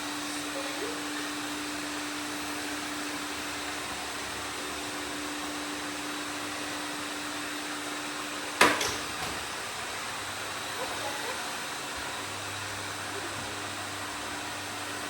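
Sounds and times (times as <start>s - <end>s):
robot vacuum cleaners whirring: 0.0s - 15.0s
loud knock: 8.6s - 9.4s.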